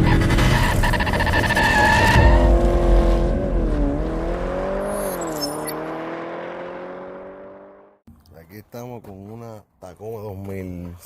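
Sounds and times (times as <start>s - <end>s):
car engine wavering pitch: 0.0s - 8.0s.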